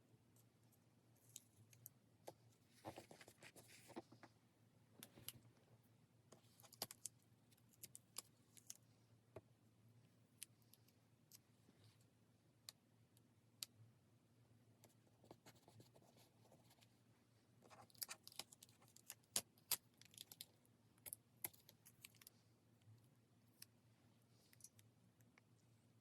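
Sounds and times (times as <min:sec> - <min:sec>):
paper rustling and scratching: 0:02.7 - 0:04.2.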